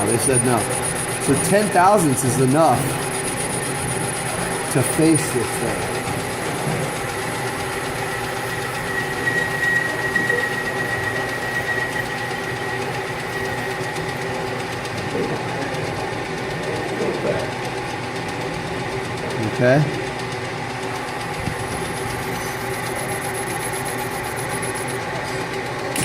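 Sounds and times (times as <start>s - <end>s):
thin high whine: 0.0s - 16.1s, 21.4s - 26.0s
metal lathe running: 0.0s - 26.0s.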